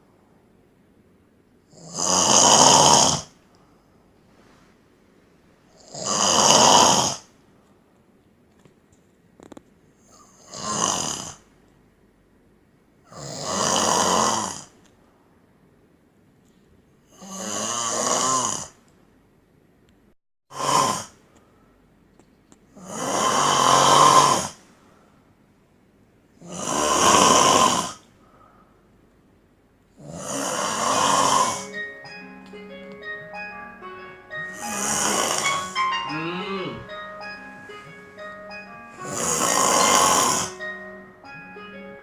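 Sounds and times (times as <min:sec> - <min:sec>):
man snoring loudly: 0:01.7 - 0:03.3, 0:05.8 - 0:07.3, 0:10.4 - 0:11.4, 0:13.1 - 0:14.7, 0:17.2 - 0:18.8, 0:20.5 - 0:21.2, 0:22.8 - 0:24.6, 0:26.4 - 0:28.0, 0:30.0 - 0:31.8, 0:34.3 - 0:37.0, 0:37.9 - 0:40.7.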